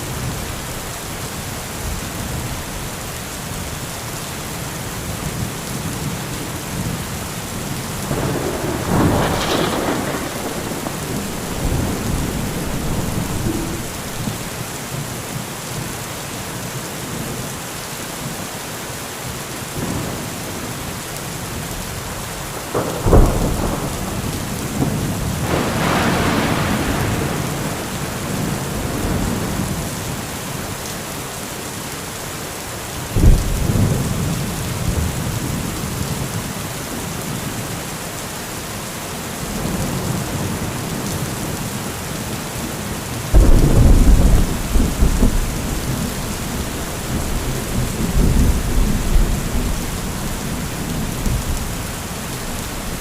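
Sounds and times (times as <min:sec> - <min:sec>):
heavy rain falling: 0:00.0 - 0:53.0
low rumble of thunder: 0:05.3 - 0:14.6, 0:22.6 - 0:30.2, 0:33.2 - 0:36.3, 0:43.3 - 0:53.0
thunder cracks: 0:08.0 - 0:14.5, 0:22.7 - 0:29.4, 0:43.3 - 0:53.0.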